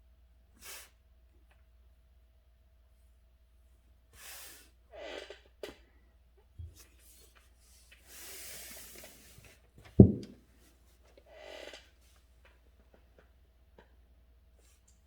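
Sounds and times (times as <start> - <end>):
soft rubbing hiss: 6.6 - 11.1
dull thump: 10.0 - 10.4.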